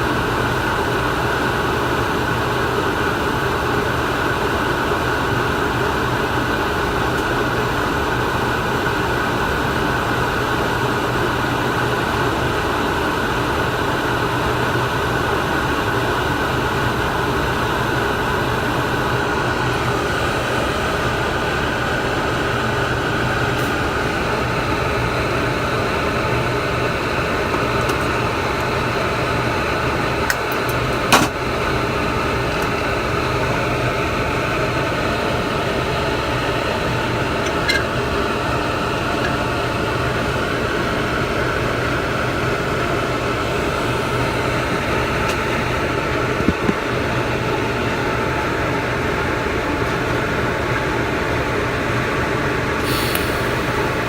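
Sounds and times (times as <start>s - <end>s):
mechanical drone with hiss: 52.8s - 54.0s.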